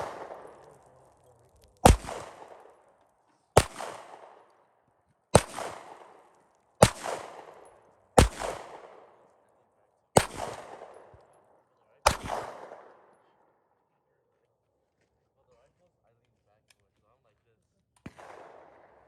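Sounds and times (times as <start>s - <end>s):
rifle shots with echo: 0.0s - 4.7s, 5.3s - 13.3s, 18.0s - 19.0s.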